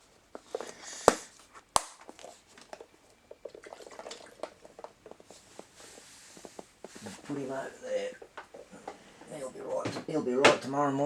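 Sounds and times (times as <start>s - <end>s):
faint liquid sounds: 2.2s - 6.1s.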